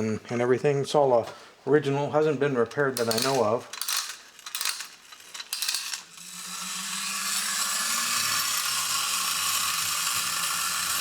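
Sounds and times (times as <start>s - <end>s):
spring motor whirring: 3.0s - 11.0s
flint wheel grinding hiss: 3.1s - 11.0s.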